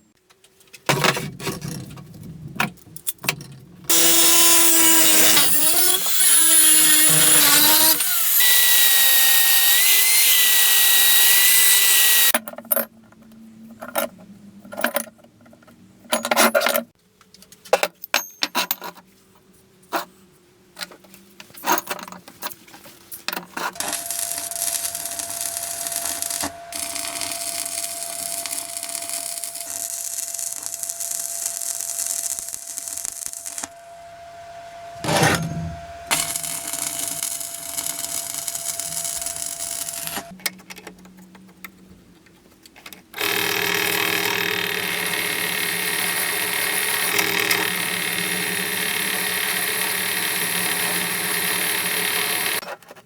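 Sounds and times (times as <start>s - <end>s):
power tool running: 3.9s - 12.3s, 23.8s - 40.3s, 43.2s - 52.6s.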